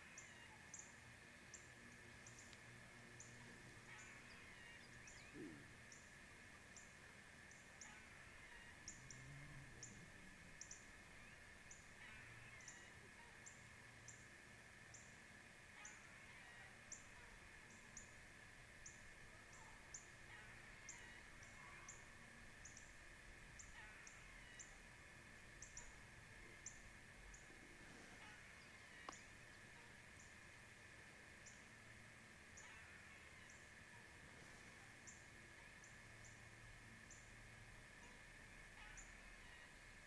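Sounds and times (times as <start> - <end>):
distant bird calls: 0.0 - 40.0
steady high hum: 0.0 - 40.0.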